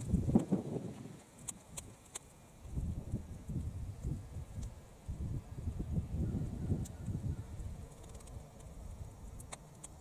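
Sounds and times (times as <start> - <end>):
wind buffeting microphone: 0.0 - 2.0, 2.6 - 10.0
sharp fire crackle: 0.0 - 5.4
weeds burning in fire: 0.0 - 10.0.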